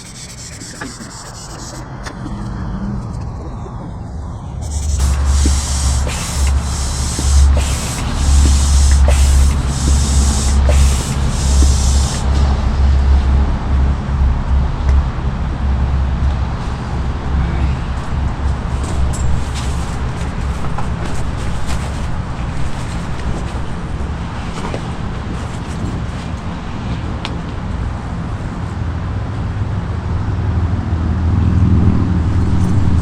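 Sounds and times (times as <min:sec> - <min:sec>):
air pump hissing strokes: 0:00.0 - 0:02.5, 0:04.6 - 0:12.8
steady low rumble: 0:00.0 - 0:33.0.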